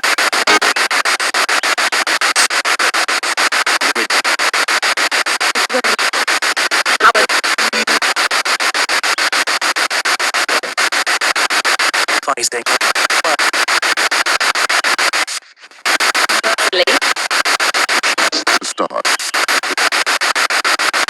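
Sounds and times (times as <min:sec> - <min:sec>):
broadcast audio fragments: 0:00.0 - 0:02.8, 0:10.4 - 0:21.0
pulsing radio static: 0:00.0 - 0:21.0.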